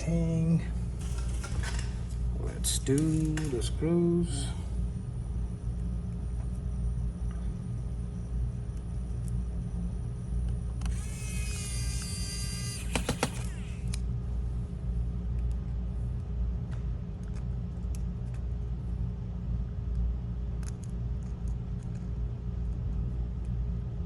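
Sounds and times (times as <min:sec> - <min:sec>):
electric screwdriver whining: 0:10.8 - 0:14.0
sharp clicks: 0:10.8 - 0:14.0.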